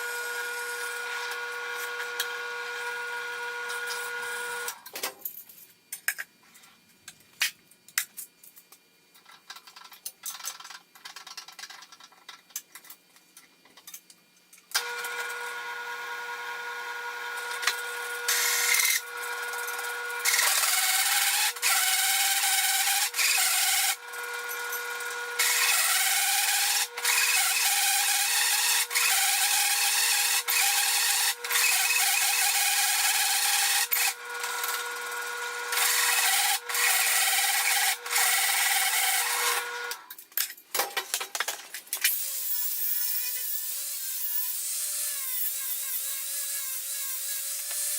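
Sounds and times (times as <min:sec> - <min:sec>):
power tool cutting steel plate: 0:00.0 - 0:04.8, 0:14.8 - 0:40.1, 0:42.0 - 0:47.9.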